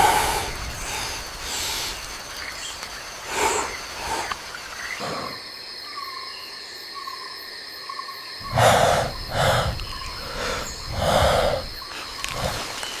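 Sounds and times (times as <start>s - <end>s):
deep breathy huffs: 0.0s - 2.1s, 3.2s - 5.4s, 8.4s - 12.9s
insect chirring: 0.0s - 13.0s.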